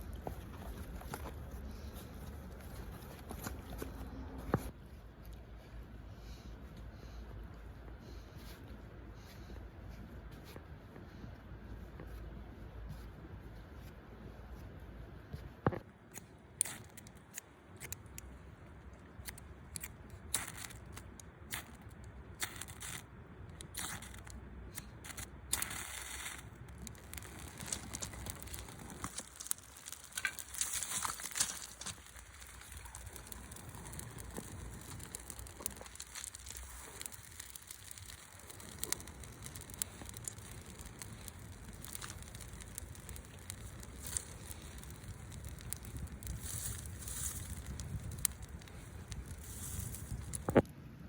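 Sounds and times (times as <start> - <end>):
crackles clicks and rustling: 0.0 - 5.4, 13.6 - 50.8
steady low rumble: 17.8 - 51.0.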